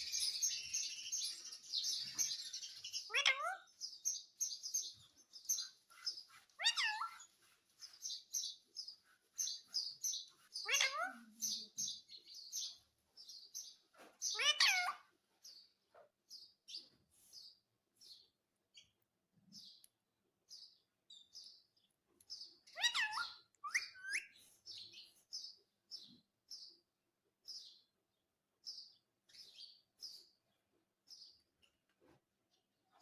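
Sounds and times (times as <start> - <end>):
parakeet chirping: 0.0 - 12.8, 14.3 - 15.0, 22.7 - 24.3.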